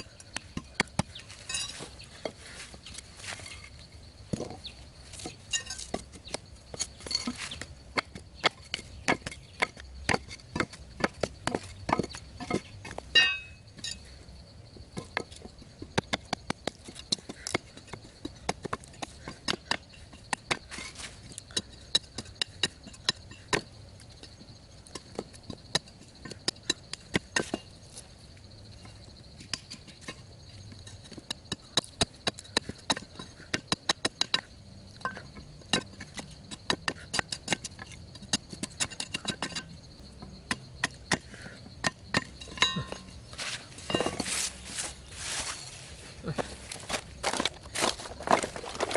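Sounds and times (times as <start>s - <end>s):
hand tool striking: 5.2s - 14.0s, 30.9s - 47.5s.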